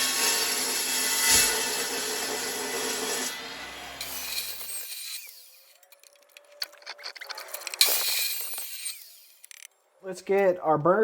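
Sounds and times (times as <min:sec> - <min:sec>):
chop saw cutting pipe: 0:00.0 - 0:06.9, 0:07.6 - 0:09.7.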